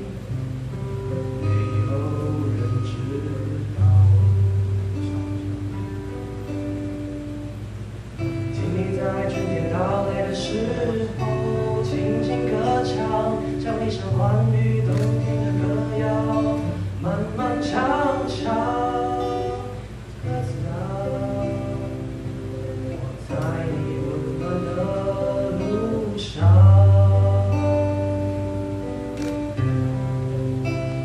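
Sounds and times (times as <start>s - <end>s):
acoustic guitar: 0.0s - 31.0s
person singing: 1.4s - 4.6s, 8.5s - 28.3s.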